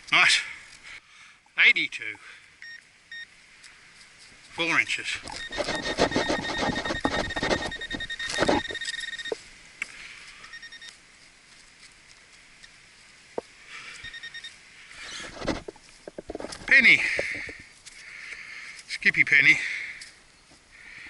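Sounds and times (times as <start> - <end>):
metal detector pulsing beep: 2.6 - 3.3, 4.8 - 9.4, 10.5 - 11.0, 14.0 - 14.6
digging in soil: 3.6 - 20.2.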